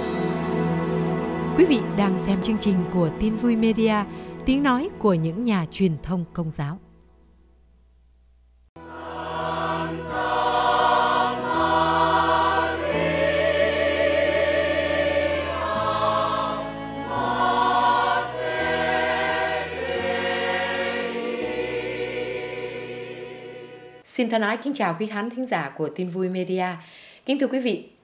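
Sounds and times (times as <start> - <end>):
choir singing slow held chords: 0.0 - 2.7, 8.8 - 24.0.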